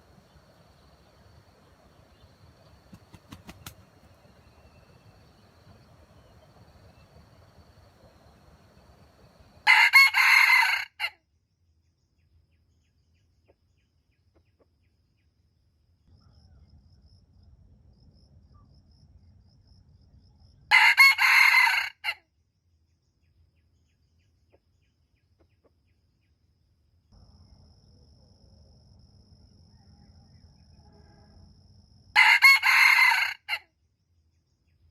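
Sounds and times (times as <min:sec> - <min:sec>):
rooster crowing: 0:08.0 - 0:11.2, 0:20.7 - 0:22.2, 0:29.7 - 0:31.4, 0:32.1 - 0:33.6.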